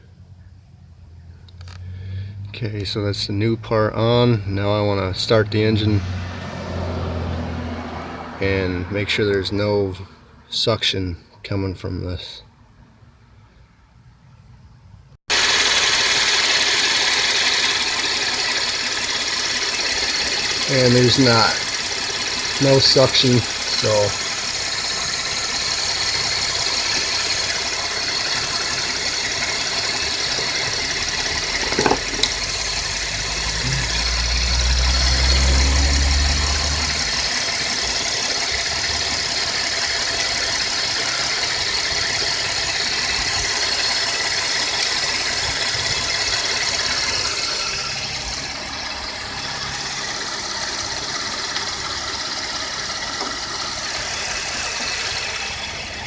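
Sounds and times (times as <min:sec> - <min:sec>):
car engine idling: 0:15.3 - 0:56.0.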